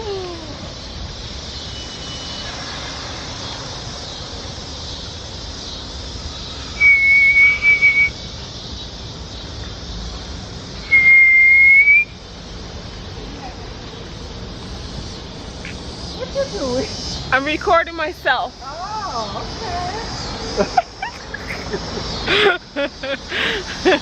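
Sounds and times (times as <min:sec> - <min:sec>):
high whistled notes: 0:06.6 - 0:08.3, 0:10.8 - 0:12.2.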